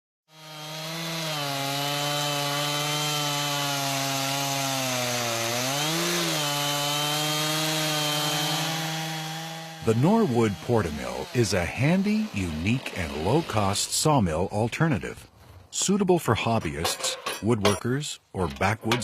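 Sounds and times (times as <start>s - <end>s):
chainsaw cutting log: 0.3s - 14.2s.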